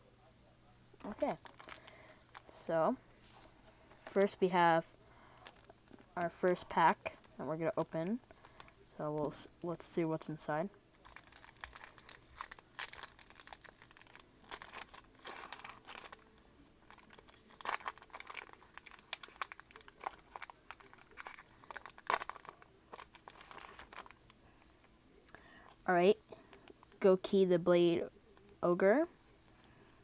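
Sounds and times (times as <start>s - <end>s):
wrapper tearing and crinkling: 1.0s - 2.4s, 11.0s - 24.2s.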